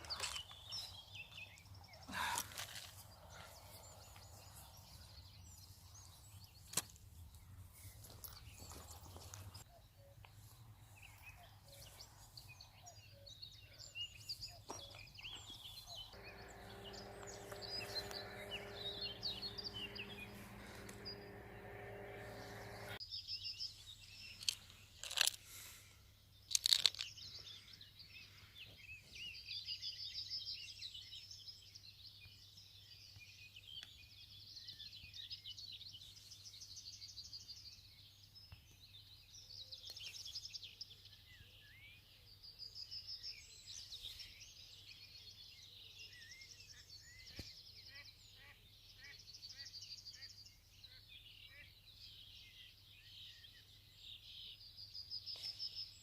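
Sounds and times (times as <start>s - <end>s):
small birds singing and chirping: 0.0s - 25.0s, 26.2s - 56.0s
steady low hum: 16.1s - 23.0s.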